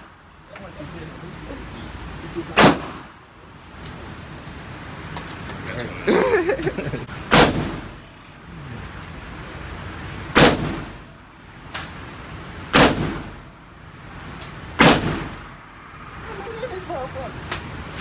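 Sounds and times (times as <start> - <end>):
faint gunshot: 2.6 - 3.1, 7.3 - 7.9, 10.4 - 11.0, 12.8 - 13.3, 14.8 - 15.4
loud gunshots with echo: 2.6 - 3.2, 7.3 - 8.0, 10.3 - 11.1, 12.7 - 13.5, 14.8 - 15.5.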